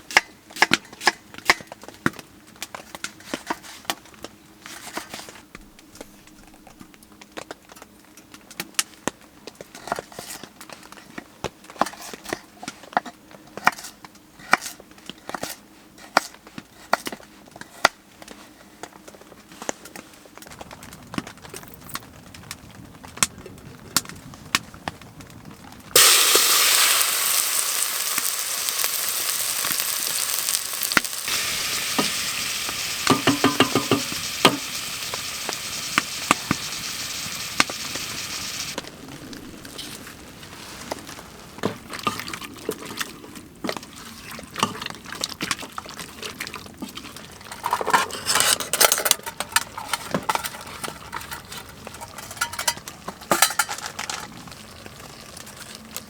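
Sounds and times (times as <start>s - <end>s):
food sizzling in a pan: 26.0s - 42.8s, 47.6s - 55.7s
utensil stirring and scraping: 27.3s - 38.8s, 41.7s - 54.4s
utensil clinking on cookware: 28.3s - 36.7s, 47.5s - 54.4s.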